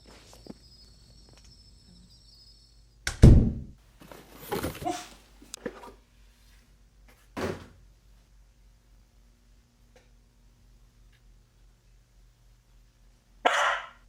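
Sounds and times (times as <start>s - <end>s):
deep thump: 3.1s - 3.8s
scuffling knocks: 4.0s - 5.9s.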